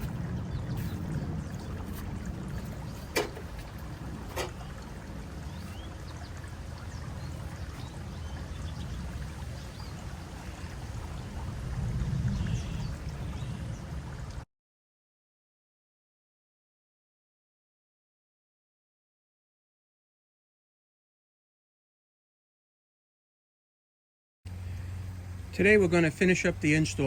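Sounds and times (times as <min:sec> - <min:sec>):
low rumbling noise: 0:00.0 - 0:14.4.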